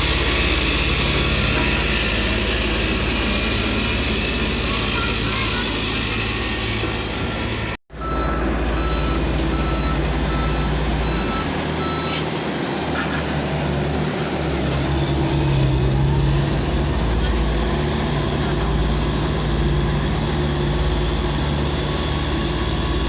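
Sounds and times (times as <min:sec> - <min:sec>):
heavy vehicle engine running: 0:00.0 - 0:23.0
reversing alarm beeping: 0:08.0 - 0:12.3.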